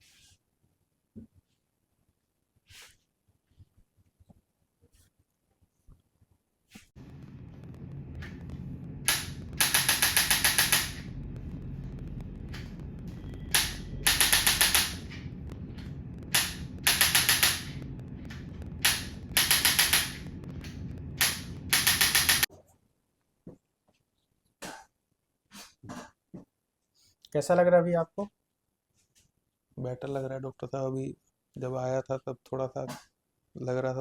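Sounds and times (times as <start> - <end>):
steady low hum: 7.0 - 22.5.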